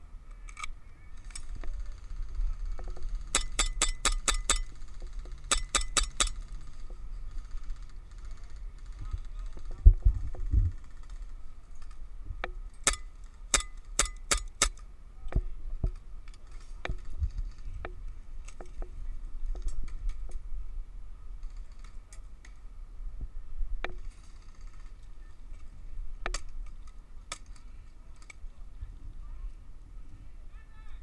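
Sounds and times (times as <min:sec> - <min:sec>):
airsoft guns firing: 0:01.2 - 0:09.8.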